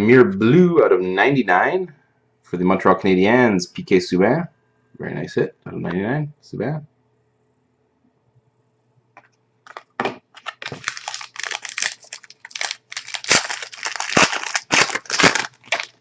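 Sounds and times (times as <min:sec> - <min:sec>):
wrapper being torn and crumpled: 0:09.7 - 0:16.0.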